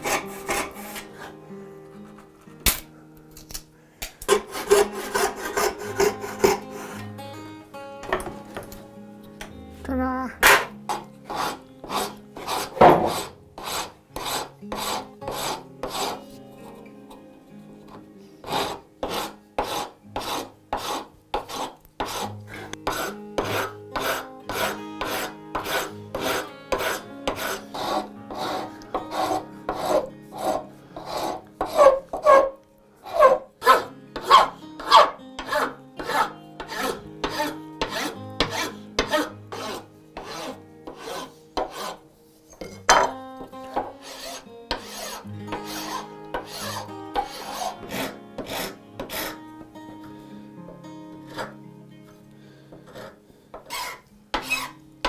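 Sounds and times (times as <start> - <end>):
rasp strokes on wood: 0.0 - 1.4, 4.3 - 7.1, 10.4 - 16.8, 18.4 - 42.0, 43.6 - 49.4, 51.3 - 51.6, 52.8 - 54.8.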